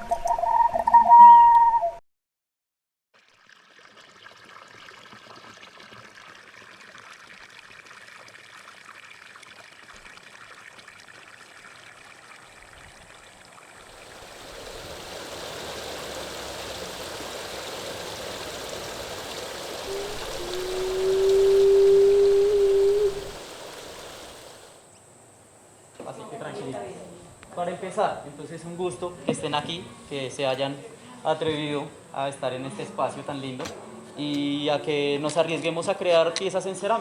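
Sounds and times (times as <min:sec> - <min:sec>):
stream flowing: 0:03.2 - 0:24.8.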